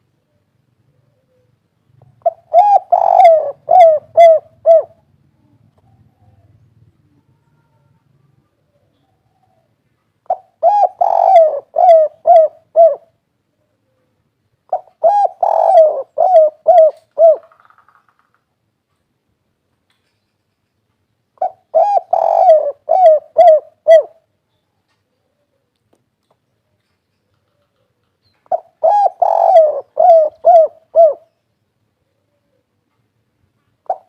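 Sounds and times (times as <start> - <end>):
dove cooing: 0.9 - 5.1, 8.6 - 14.1, 14.7 - 17.7, 21.4 - 24.3, 27.4 - 31.3.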